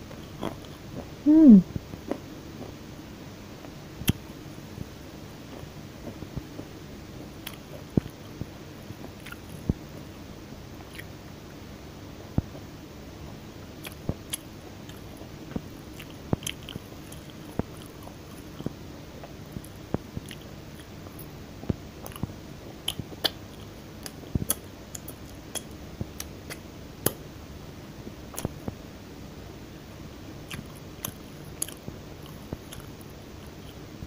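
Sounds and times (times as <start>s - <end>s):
person chewing crunchy food: 7.4s - 8.2s, 9.2s - 9.7s, 13.8s - 21.3s, 22.0s - 27.2s, 30.5s - 33.8s.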